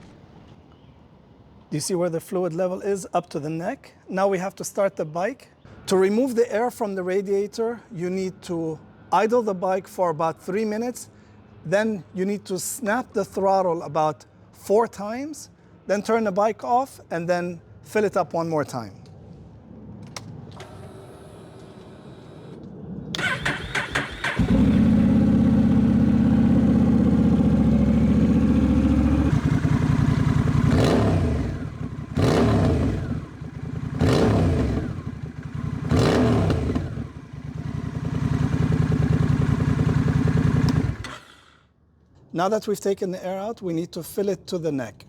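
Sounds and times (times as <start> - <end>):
engine starter cranking: 23.2 - 24.7, 40.6 - 41.6
motorcycle engine idling: 23.2 - 41.1
motorcycle engine revving: 23.2 - 41.2.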